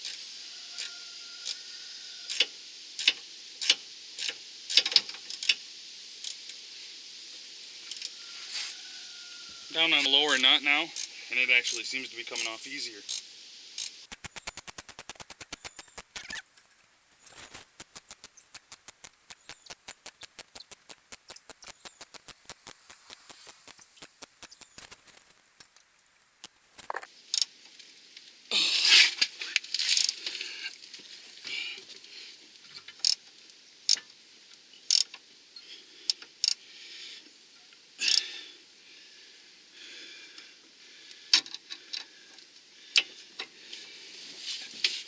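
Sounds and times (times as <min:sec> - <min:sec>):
ratchet wrench clicking: 0:02.3 - 0:05.6, 0:06.2 - 0:06.6, 0:07.9 - 0:08.1, 0:11.0 - 0:11.8, 0:12.4 - 0:27.5, 0:34.9 - 0:35.1.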